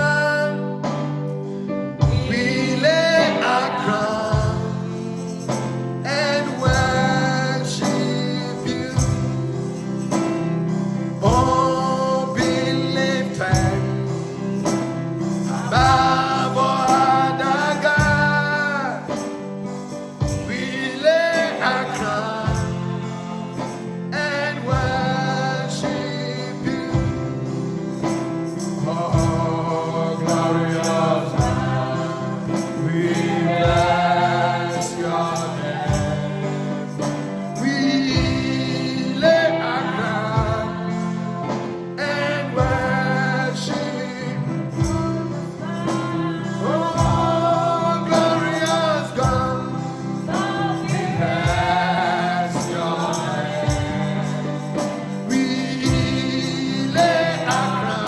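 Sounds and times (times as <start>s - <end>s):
band playing gospel music: 0.0s - 58.0s
steady drum beat: 2.0s - 2.7s, 4.3s - 5.0s, 11.2s - 12.8s, 13.5s - 18.5s, 28.1s - 35.1s, 35.7s - 38.8s, 44.8s - 45.3s, 46.0s - 47.6s, 49.2s - 57.9s
voices singing: 2.0s - 10.2s, 11.0s - 58.0s.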